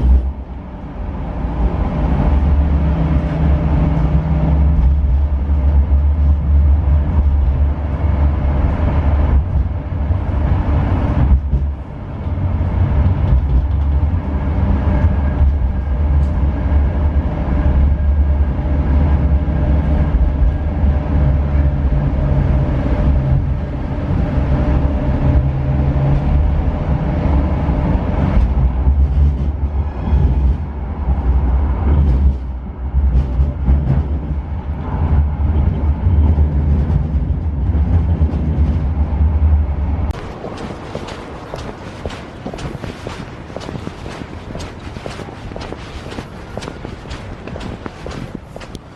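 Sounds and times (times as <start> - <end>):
moving vehicle low rumble: 0.0 - 48.9.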